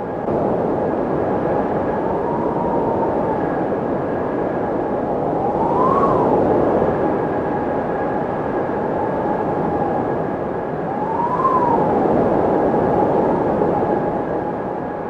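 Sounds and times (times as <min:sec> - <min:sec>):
wind rushing: 0:00.0 - 0:15.0
windmill whine: 0:00.0 - 0:15.0
thin steady whistle: 0:05.4 - 0:06.4, 0:10.8 - 0:12.2.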